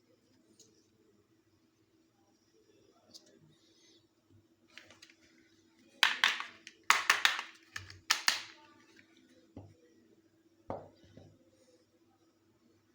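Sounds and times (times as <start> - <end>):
small objects tapping and clicking: 4.7 - 5.2, 6.0 - 8.7.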